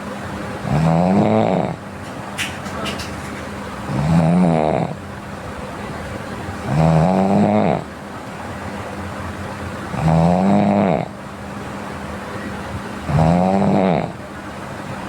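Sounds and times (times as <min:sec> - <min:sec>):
person snoring: 0:13.1 - 0:14.2.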